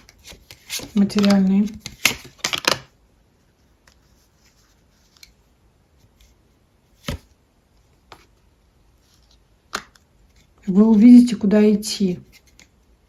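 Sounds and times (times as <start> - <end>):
cards clicking: 0.1 - 2.9.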